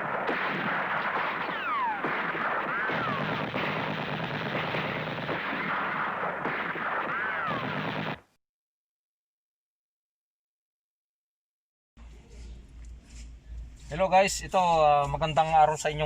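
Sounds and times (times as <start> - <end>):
loud dense crackling: 0.0 - 8.3.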